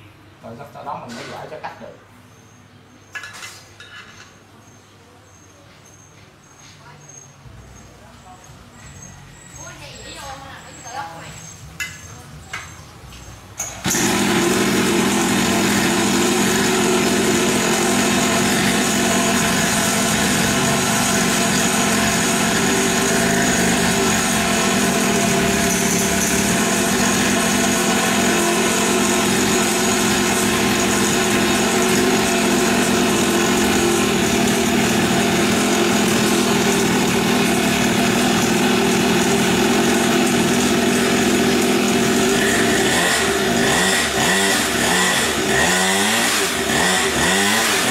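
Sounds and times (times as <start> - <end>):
dirt bike engine idling: 13.8 - 47.9.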